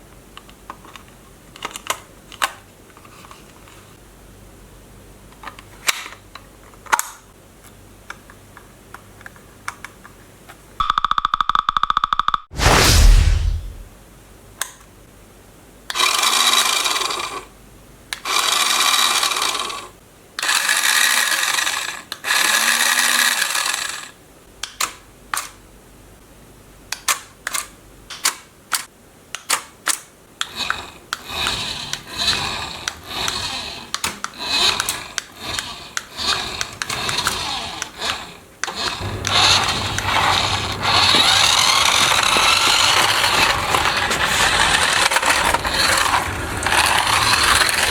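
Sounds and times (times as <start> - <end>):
toy car electric motor whirring: 15.9 - 17.5, 18.2 - 24.2, 30.4 - 47.9
clicking and scraping: 30.4 - 47.9.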